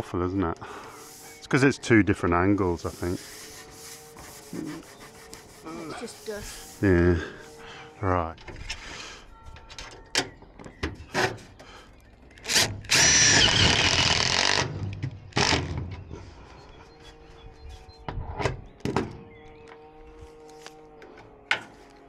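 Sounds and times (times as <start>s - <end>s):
power drill whining: 12.4s - 15.8s.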